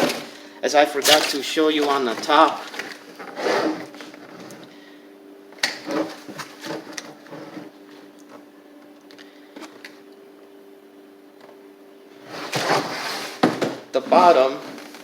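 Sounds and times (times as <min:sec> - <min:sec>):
faint steady hum: 0:00.0 - 0:15.0
cardboard box knocks and rustles: 0:12.4 - 0:13.9.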